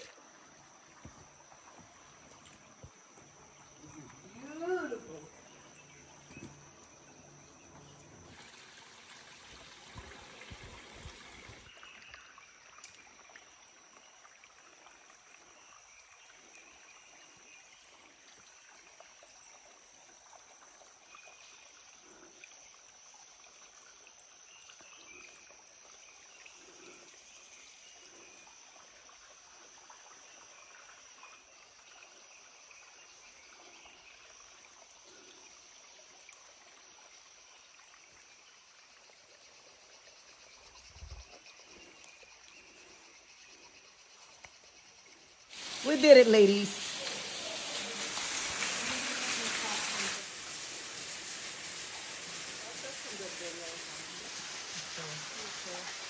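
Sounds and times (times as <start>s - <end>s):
high insect drone: 0.0s - 14.8s, 15.6s - 36.1s, 38.4s - 56.0s
stream running water: 0.0s - 56.0s.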